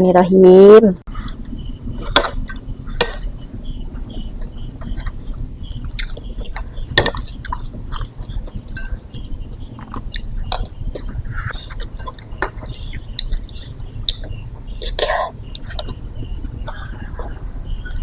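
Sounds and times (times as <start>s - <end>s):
mouth clicks: 4.0s - 18.0s
person chewing food: 4.0s - 18.0s.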